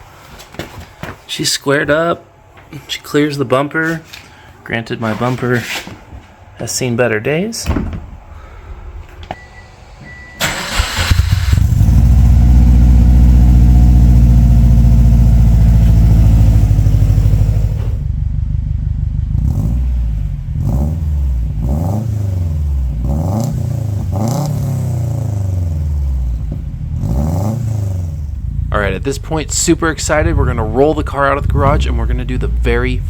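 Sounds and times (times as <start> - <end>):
car engine starting and idling: 8.1 - 33.0
car engine revving in blips: 10.0 - 33.0.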